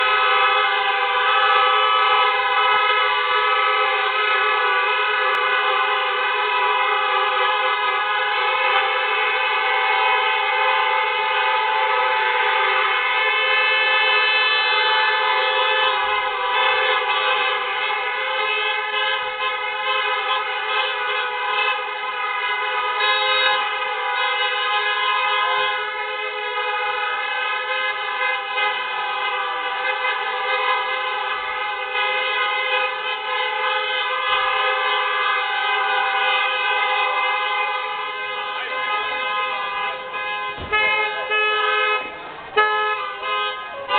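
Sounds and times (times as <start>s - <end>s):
car horns held down: 39.9s - 43.6s.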